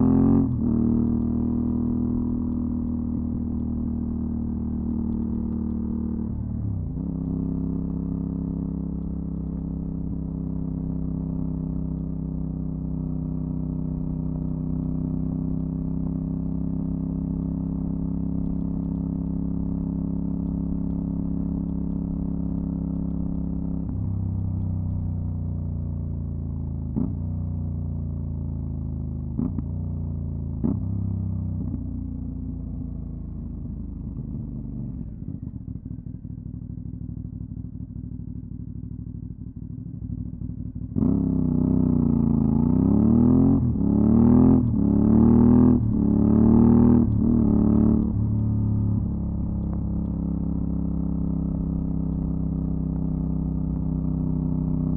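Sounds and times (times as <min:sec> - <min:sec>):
motorcycle engine: 0:33.4 - 0:54.9.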